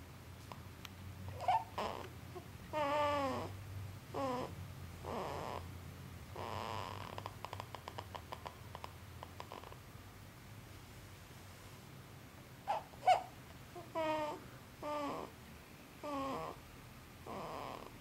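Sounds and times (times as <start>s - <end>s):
baby snoring: 1.3s - 5.7s, 6.4s - 9.8s, 12.7s - 15.4s, 16.0s - 16.6s, 17.2s - 18.0s.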